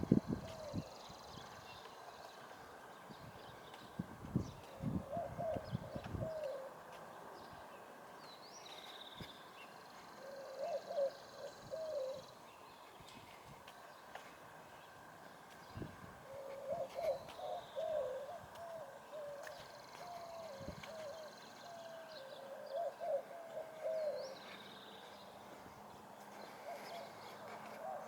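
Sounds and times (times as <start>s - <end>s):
dove cooing: 0.0s - 1.1s, 4.6s - 6.8s, 10.2s - 12.4s, 16.2s - 25.2s, 26.2s - 28.0s.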